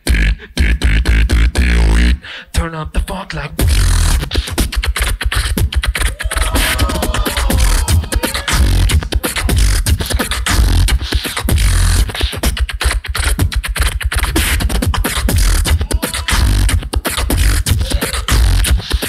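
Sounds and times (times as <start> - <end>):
deep bass: 0.0 - 2.2, 3.5 - 4.3, 5.6 - 12.0, 14.6 - 18.9
beatboxing vocal drums: 0.0 - 19.0
pitched vocal slides: 4.4 - 11.4, 15.1 - 19.0.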